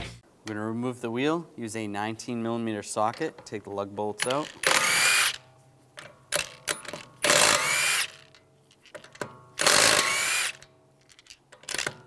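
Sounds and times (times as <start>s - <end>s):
power wrench whirring: 4.3s - 5.4s, 6.8s - 8.3s, 9.6s - 10.7s.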